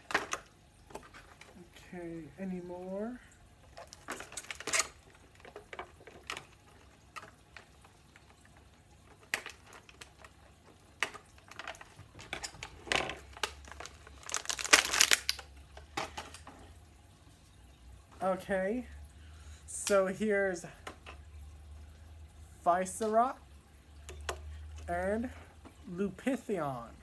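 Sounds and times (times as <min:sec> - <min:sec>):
toy packaging crinkling: 0:03.8 - 0:06.4, 0:11.0 - 0:15.5.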